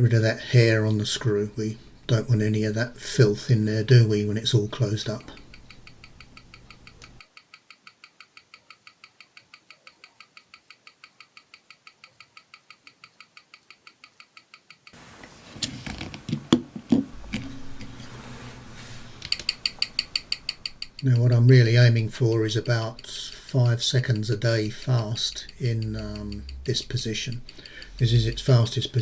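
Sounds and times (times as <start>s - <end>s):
watch ticking: 0.0s - 15.0s, 17.2s - 29.0s
watch handling clicks: 4.7s - 7.2s, 17.2s - 29.0s.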